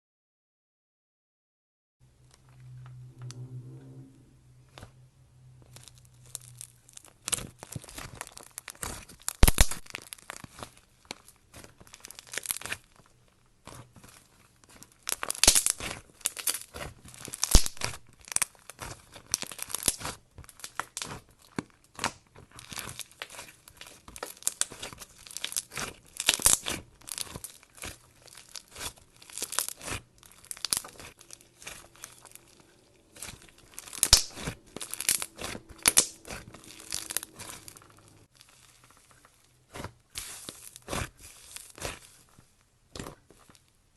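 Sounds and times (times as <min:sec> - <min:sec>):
slime crackling and popping: 0:05.7 - 0:43.8.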